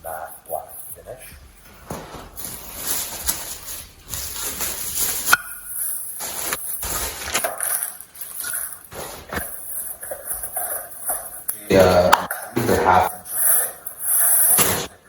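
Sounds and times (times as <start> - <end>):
steady high microphone hiss: 0.0 - 15.0
packaging rustling and crinkling: 1.8 - 11.3.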